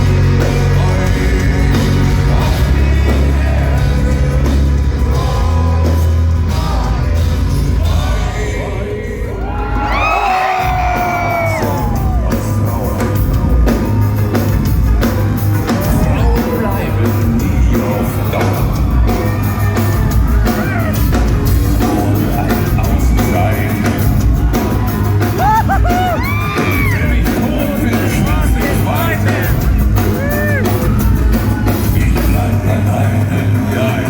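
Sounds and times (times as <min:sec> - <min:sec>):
heavy rock band playing: 0:00.0 - 0:34.0
person yelling vocals: 0:25.4 - 0:27.0, 0:30.2 - 0:30.7.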